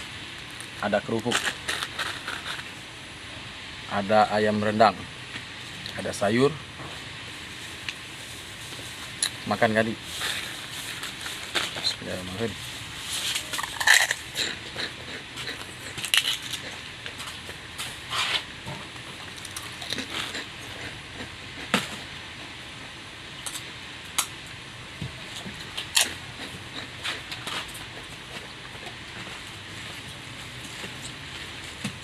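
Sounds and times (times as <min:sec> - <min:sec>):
person chewing and smacking: 0:13.4 - 0:17.5, 0:19.3 - 0:22.0, 0:25.4 - 0:29.3.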